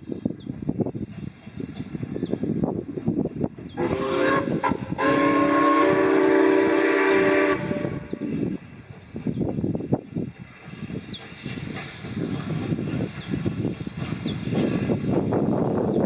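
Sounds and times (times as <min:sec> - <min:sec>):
steam locomotive whistle: 0:03.8 - 0:08.5.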